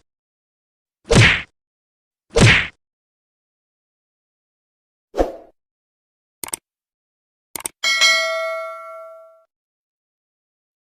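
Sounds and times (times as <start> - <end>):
quick double clicks: 6.4 - 6.6, 7.6 - 7.8
bright metallic ding: 7.8 - 9.5.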